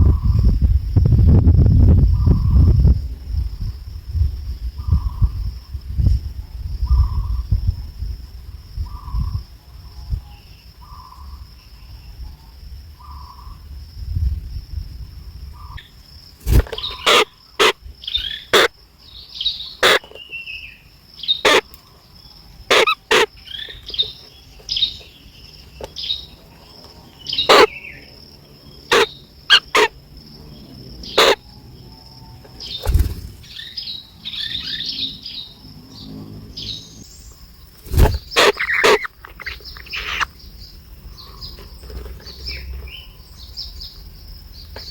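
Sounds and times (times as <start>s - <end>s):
nestling birds chirping: 15.6s - 44.9s.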